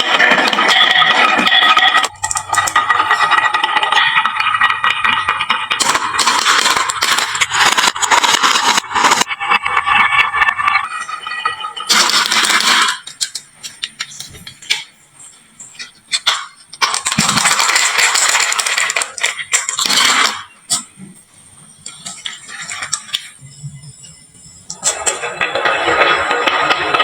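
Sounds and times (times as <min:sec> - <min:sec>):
marbles rattling down wooden slope: 0:00.0 - 0:13.4, 0:16.3 - 0:20.5, 0:24.7 - 0:27.0.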